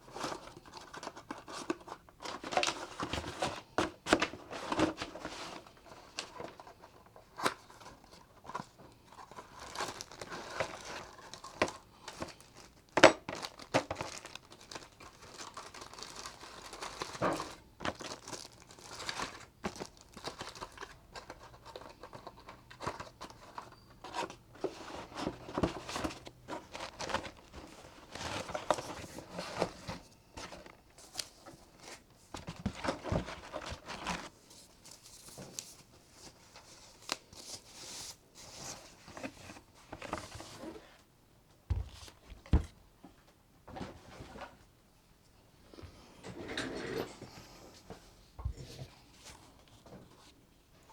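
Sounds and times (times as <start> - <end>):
packaging crinkling and tearing: 9.1 - 22.3.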